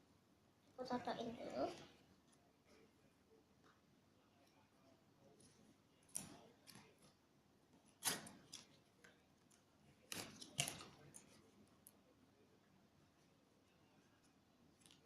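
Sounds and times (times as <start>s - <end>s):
cards clicking and rustling: 7.9s - 11.4s.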